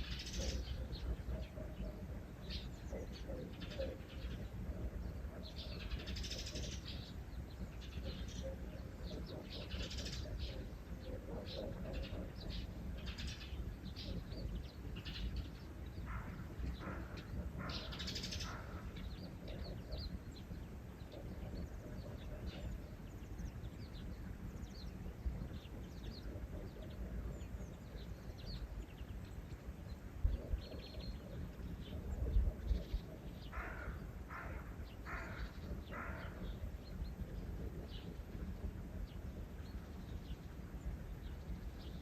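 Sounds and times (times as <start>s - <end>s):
small birds chirping: 0.0s - 42.0s
loud low bird call: 30.4s - 39.1s.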